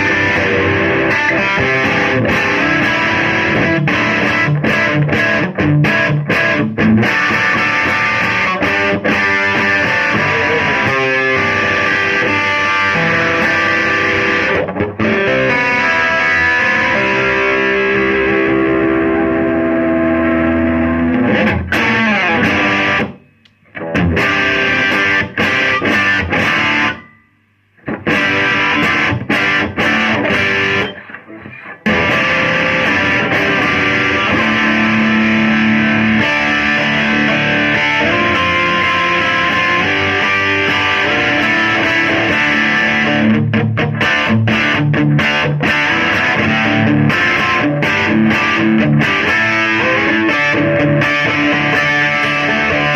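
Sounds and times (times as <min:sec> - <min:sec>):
distorted electric guitar: 0:00.0 - 0:52.9.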